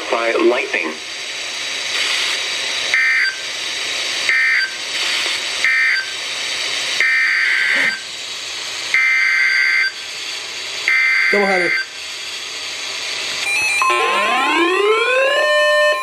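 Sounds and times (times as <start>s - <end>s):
radio hiss: 0.0s - 8.2s, 9.0s - 12.8s
warbling two-tone data bursts: 13.4s - 16.0s.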